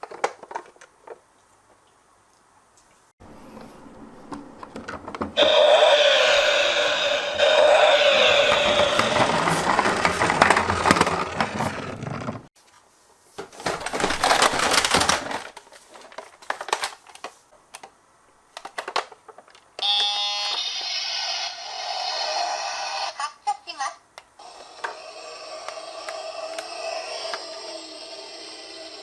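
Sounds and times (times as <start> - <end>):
toy cars rattling down a slope: 6.4 - 12.4.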